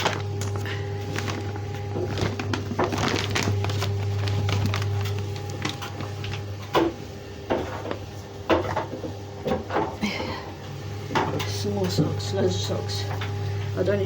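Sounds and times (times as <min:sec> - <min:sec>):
clothes rustling: 0:00.0 - 0:06.2.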